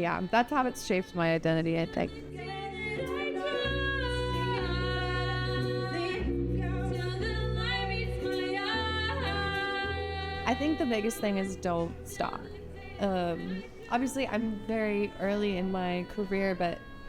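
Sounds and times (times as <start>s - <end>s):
woman singing sliding notes: 0.0s - 17.0s
steady bass backing: 2.3s - 13.6s.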